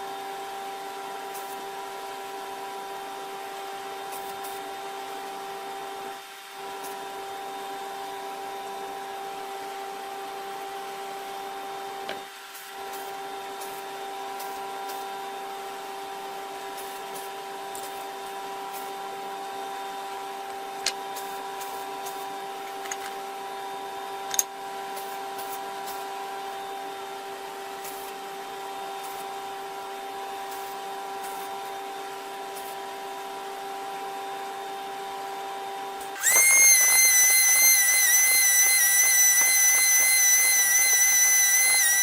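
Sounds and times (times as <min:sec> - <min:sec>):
small electric motor humming: 0:36.0 - 0:42.0.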